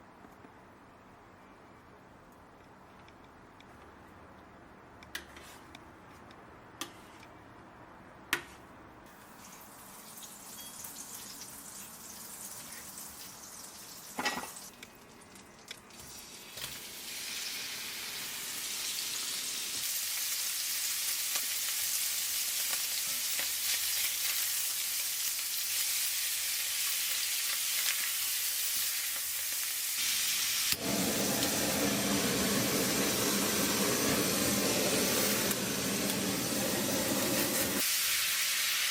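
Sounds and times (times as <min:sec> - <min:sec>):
food sizzling in a pan: 0:09.1 - 0:14.8, 0:16.0 - 0:38.9.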